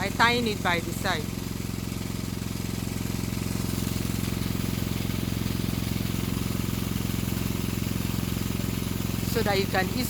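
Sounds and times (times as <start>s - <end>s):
small engine droning: 0.0s - 10.0s.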